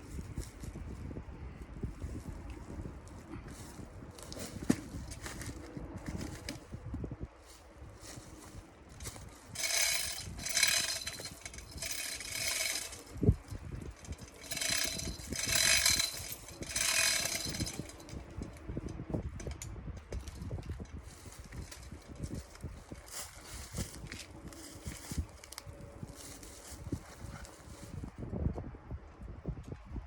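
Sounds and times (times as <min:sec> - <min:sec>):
recoil starter cord rasp: 0:08.1 - 0:18.6.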